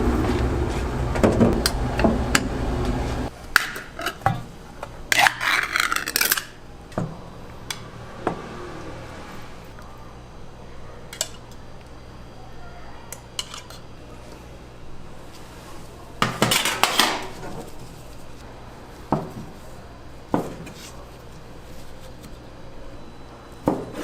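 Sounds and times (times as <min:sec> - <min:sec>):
steady low hum: 0:00.0 - 0:16.5.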